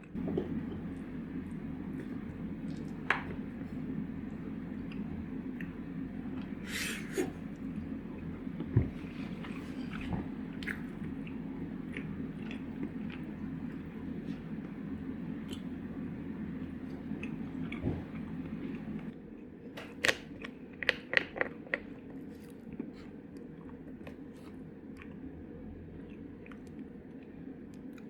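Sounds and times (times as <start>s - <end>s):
low room hum: 0.0s - 28.0s.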